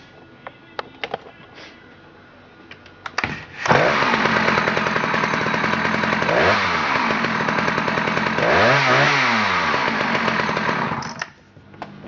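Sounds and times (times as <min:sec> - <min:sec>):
chainsaw engine running: 0:03.6 - 0:11.2
starter cord pull: 0:09.7 - 0:11.3.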